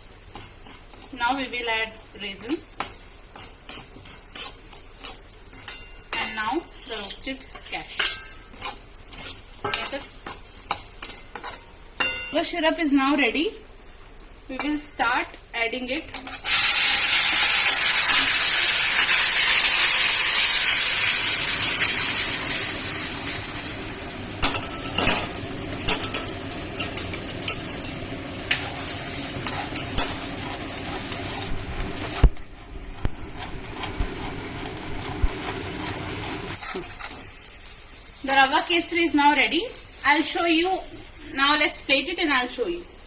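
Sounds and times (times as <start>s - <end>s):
syrup sizzling in a pan: 0.0s - 12.3s, 16.2s - 43.0s
spoon stirring in a metal pan: 0.0s - 12.5s, 16.0s - 16.5s, 24.4s - 38.6s.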